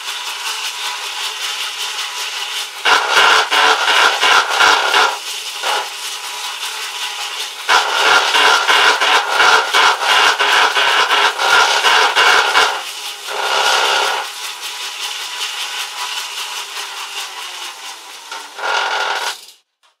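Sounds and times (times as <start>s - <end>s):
bike rollers grinding: 7.7s - 14.3s.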